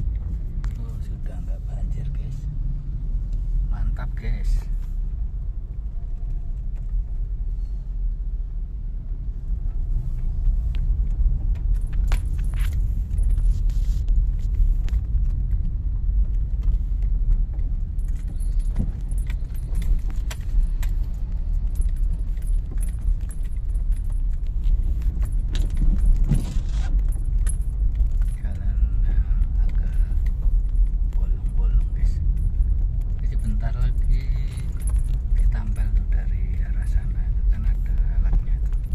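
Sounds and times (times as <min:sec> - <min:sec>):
car road rumble: 0:00.0 - 0:38.9
clicks and jangling rattles: 0:09.6 - 0:38.9.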